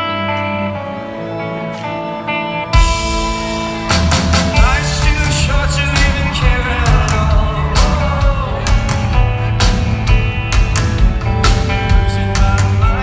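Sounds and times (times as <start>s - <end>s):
live rock band playing: 0.0s - 13.0s
sustained guitar: 0.0s - 13.0s
drums steady beat: 2.8s - 13.0s.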